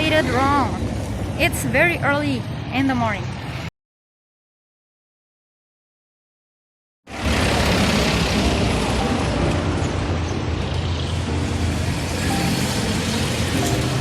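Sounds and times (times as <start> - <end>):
road traffic engines rumbling: 0.0 - 3.7, 7.1 - 14.0.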